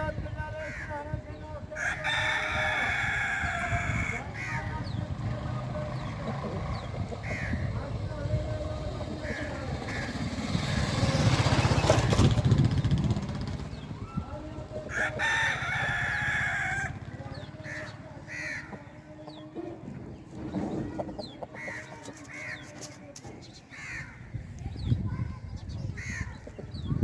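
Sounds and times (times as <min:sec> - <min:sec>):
low rumbling: 0:02.9 - 0:18.2.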